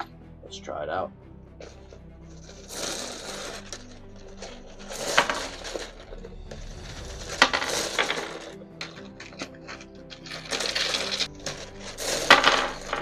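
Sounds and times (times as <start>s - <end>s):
brass cartridges clattering: 8.0s - 13.0s.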